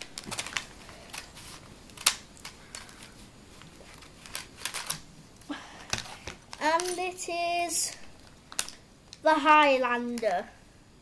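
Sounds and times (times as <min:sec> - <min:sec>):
plastic parts clicking: 0:03.9 - 0:05.0.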